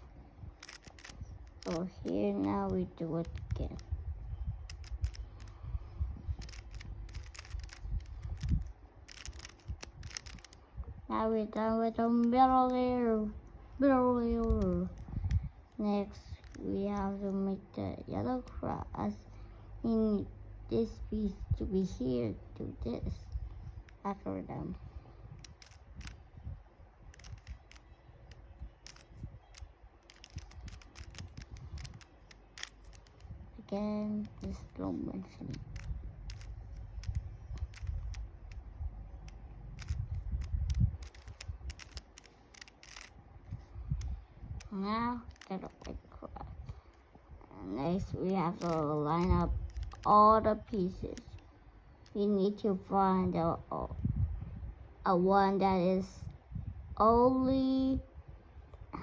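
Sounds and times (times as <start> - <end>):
puzzle cube plastic clicks: 0.0 - 4.0, 4.6 - 5.6, 6.2 - 10.7, 11.6 - 17.5, 25.4 - 26.2, 27.0 - 47.0, 47.8 - 52.3.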